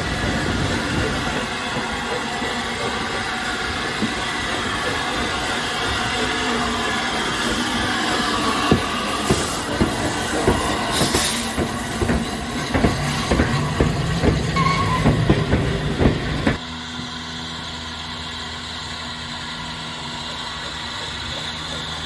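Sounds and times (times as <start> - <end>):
locomotive hum: 0.0 - 22.0
locomotive clanks and knocks: 8.5 - 16.6.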